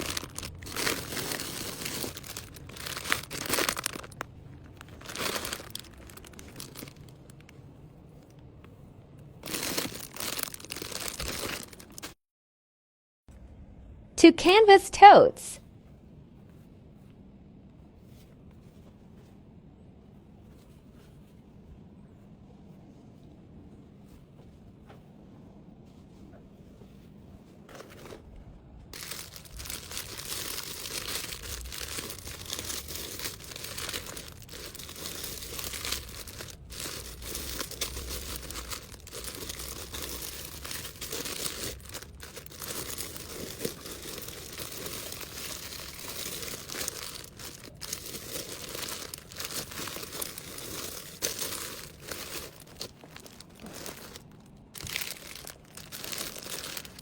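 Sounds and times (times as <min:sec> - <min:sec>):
packaging crinkling and rustling: 0:00.0 - 0:07.6, 0:09.4 - 0:12.2, 0:27.6 - 0:57.0.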